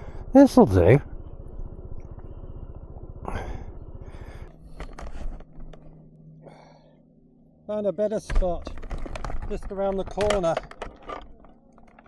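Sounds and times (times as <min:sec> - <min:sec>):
scooter engine idling: 0:00.0 - 0:07.6
steady low hum: 0:00.0 - 0:12.0.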